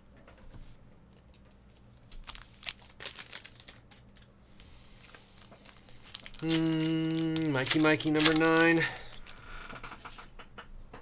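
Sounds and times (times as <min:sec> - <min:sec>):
cards being shuffled: 0:01.2 - 0:09.8
foil wrappers crinkling and tearing: 0:01.6 - 0:09.8
person speaking loudly: 0:06.4 - 0:09.2.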